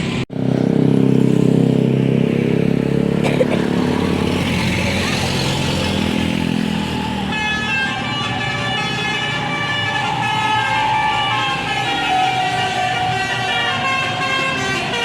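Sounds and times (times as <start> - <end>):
bus horn chord of high notes: 11.7 - 15.0.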